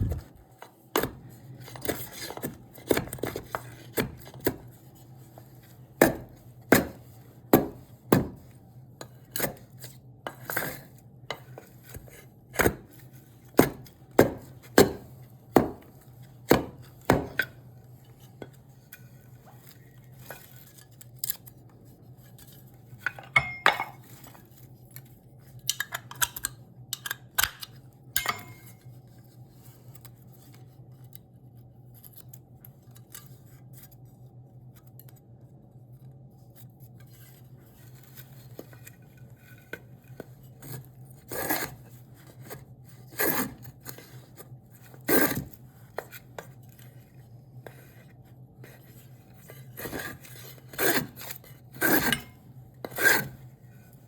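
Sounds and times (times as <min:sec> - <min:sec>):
scraping strokes on wood: 0:49.8 - 0:53.9.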